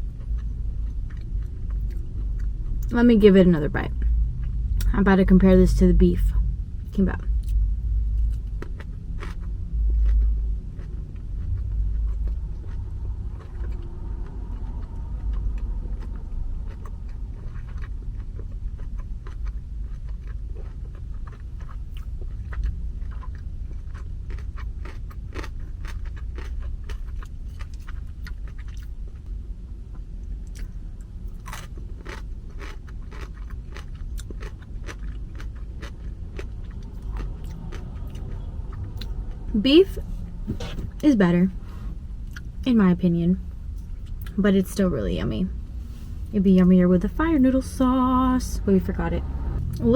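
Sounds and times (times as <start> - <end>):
chewing with wet mouth clicks: 0.0 - 3.0, 7.2 - 29.3, 29.9 - 39.5, 43.8 - 44.4
steady low rumble: 0.0 - 49.9.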